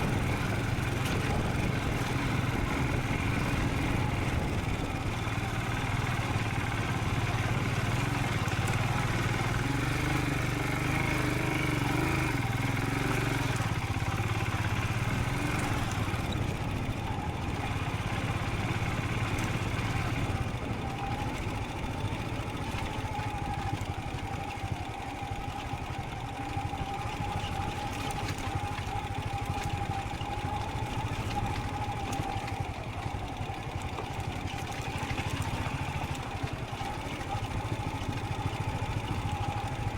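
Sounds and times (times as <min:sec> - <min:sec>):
motorcycle engine running: 0:00.0 - 0:39.9
road and wind noise: 0:00.0 - 0:39.9.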